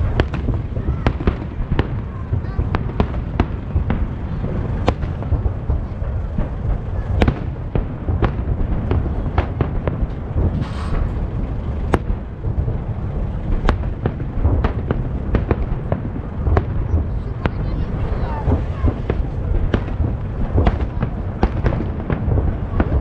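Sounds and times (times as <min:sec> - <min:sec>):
firework shells bursting: 0:00.0 - 0:17.6
low rumble: 0:00.0 - 0:23.0
brief hiss: 0:10.6 - 0:11.2.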